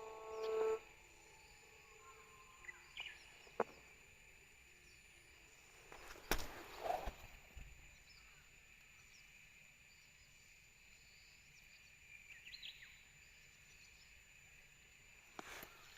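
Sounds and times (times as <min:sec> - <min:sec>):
bird chirp: 0:00.0 - 0:04.1, 0:11.0 - 0:14.2
insect drone: 0:00.0 - 0:15.9.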